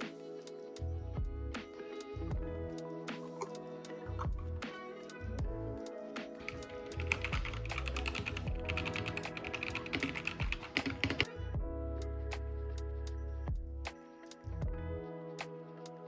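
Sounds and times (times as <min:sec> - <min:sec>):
background music: 0:00.0 - 0:16.0
mechanical keyboard typing: 0:06.5 - 0:11.2.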